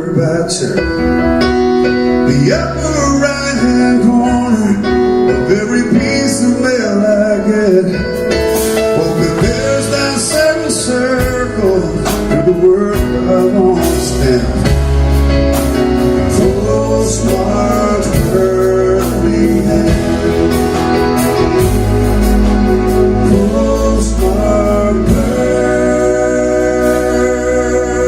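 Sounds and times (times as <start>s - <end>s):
man singing: 0.0s - 1.0s, 2.1s - 28.0s
live country band: 0.0s - 28.0s.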